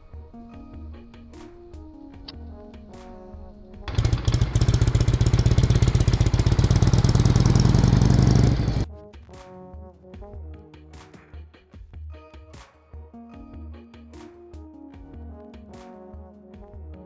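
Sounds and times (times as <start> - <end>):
background music: 0.0 - 4.4, 8.6 - 17.0
motorcycle engine running: 3.9 - 8.9.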